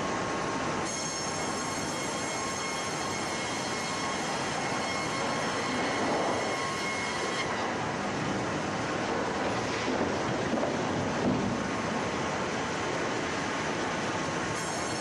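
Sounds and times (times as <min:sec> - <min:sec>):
sawmill machine noise: 0:00.0 - 0:15.0
band saw whine: 0:00.8 - 0:08.1, 0:14.5 - 0:15.0.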